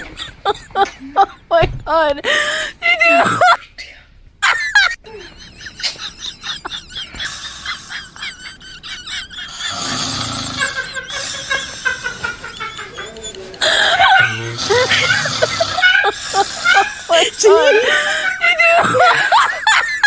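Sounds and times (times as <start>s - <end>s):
man snoring: 9.5s - 17.1s.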